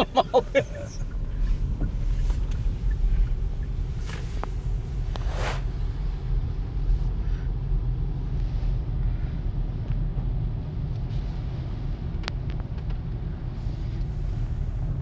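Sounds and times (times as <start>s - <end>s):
car engine and road noise: 0.0s - 15.0s
brief hiss: 5.2s - 5.7s.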